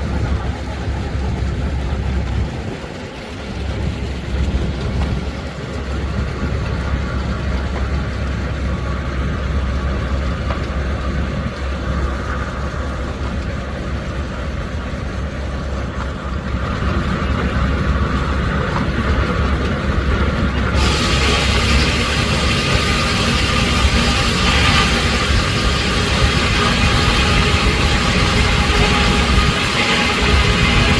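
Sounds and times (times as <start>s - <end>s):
sawmill machinery rumbling: 0.0s - 30.9s
high steam hiss: 20.6s - 30.9s.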